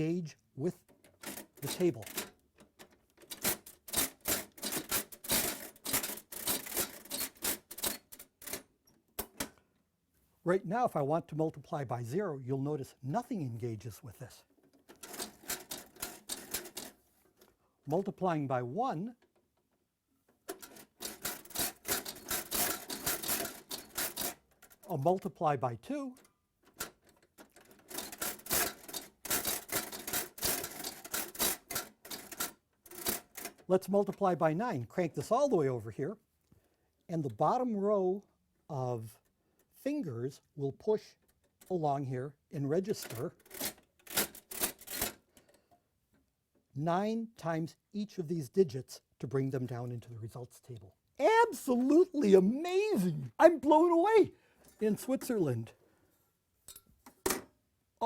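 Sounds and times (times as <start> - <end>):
mechanical calculator levers clicking: 1.1 - 8.6, 20.5 - 24.9, 26.8 - 33.7.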